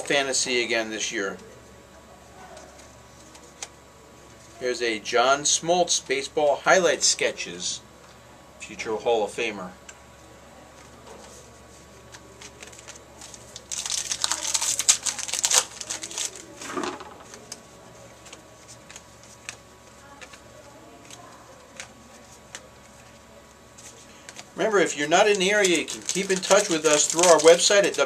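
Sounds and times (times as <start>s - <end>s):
wrapper crinkling and tearing: 12.4s - 16.6s, 24.3s - 28.0s
trading cards clicking: 24.2s - 28.0s.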